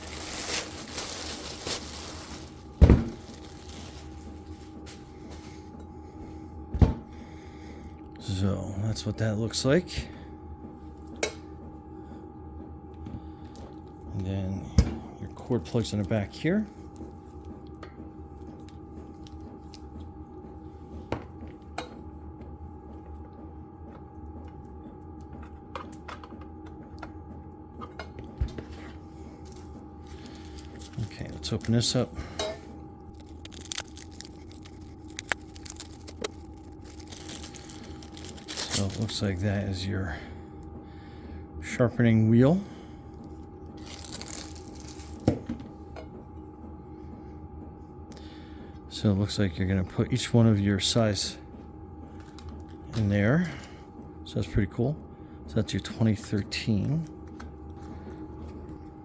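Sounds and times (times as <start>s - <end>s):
packaging rustling: 0.0s - 5.6s, 33.1s - 39.4s, 43.8s - 45.2s
diesel heater droning: 0.0s - 59.0s
faint steady hum: 0.0s - 59.0s.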